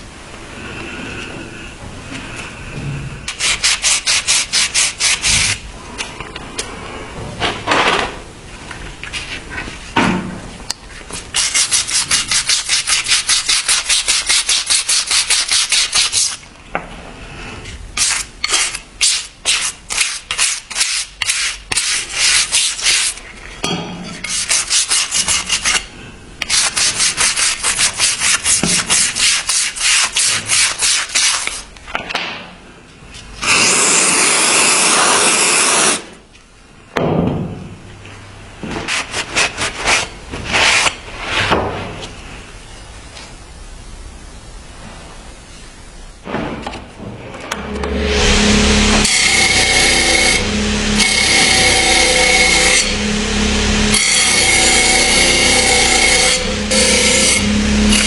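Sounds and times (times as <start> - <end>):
knife blade being scrubbed: 11.2 - 16.4, 24.1 - 31.6.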